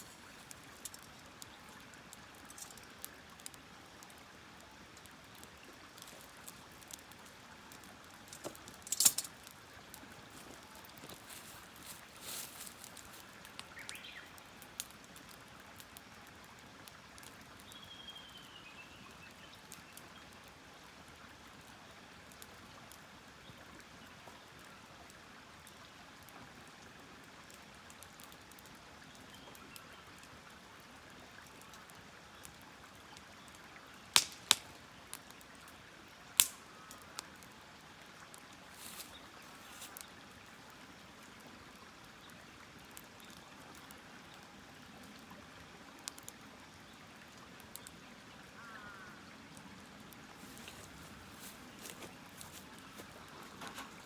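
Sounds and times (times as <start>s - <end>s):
campfire hissing: 0.0s - 17.7s, 31.8s - 54.0s
campfire sharp pops: 34.1s - 35.2s, 36.4s - 36.6s.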